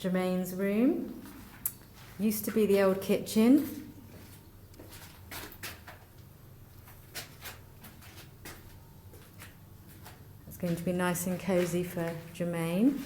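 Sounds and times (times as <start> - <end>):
low steady hum: 0.0 - 13.0
footsteps on concrete floor: 1.0 - 13.0.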